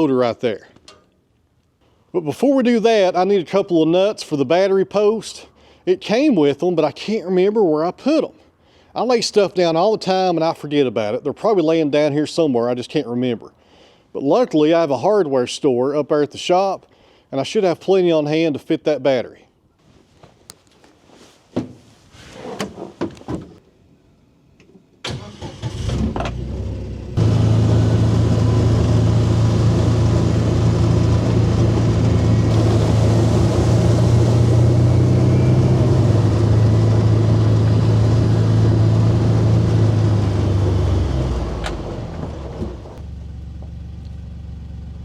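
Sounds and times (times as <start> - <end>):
vehicle engine running: 26.4 - 45.0.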